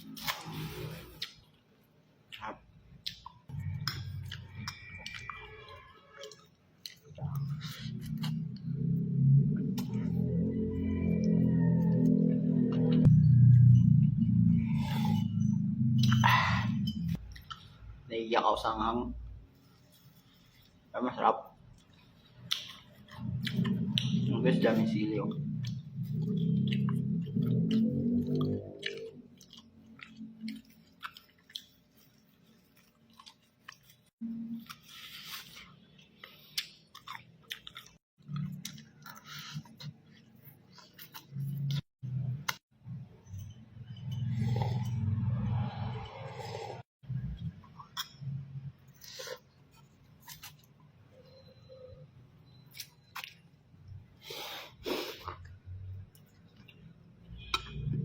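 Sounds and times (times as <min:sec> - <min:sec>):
person chewing food: 0:00.0 - 0:17.9, 0:21.6 - 0:51.4, 0:52.4 - 0:57.8
eating noises: 0:21.6 - 0:41.8.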